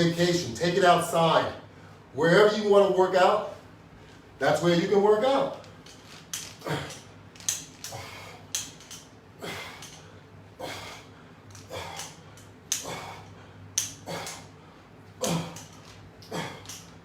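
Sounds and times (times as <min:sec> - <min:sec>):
man breathing: 0:06.5 - 0:07.2, 0:07.8 - 0:17.0.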